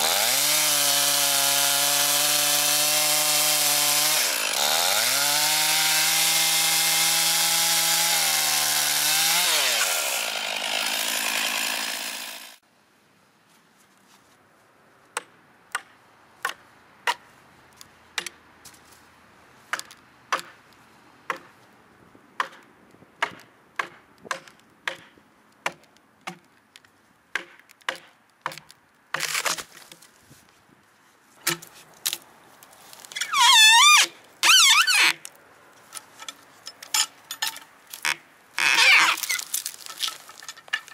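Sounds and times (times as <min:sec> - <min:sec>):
chainsaw running: 0:00.0 - 0:12.6.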